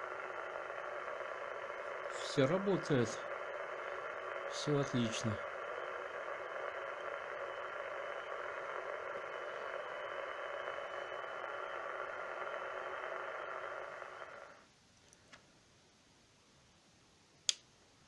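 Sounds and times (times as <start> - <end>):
radio receiver static hiss: 0.0 - 15.4.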